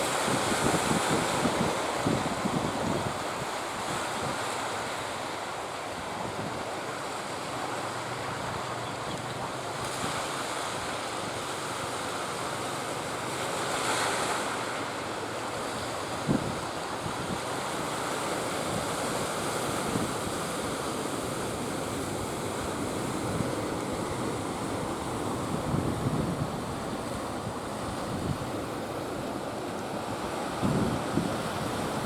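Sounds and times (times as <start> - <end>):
sea surf breaking: 0.0 - 32.0
wind buffeting microphone: 18.6 - 32.0.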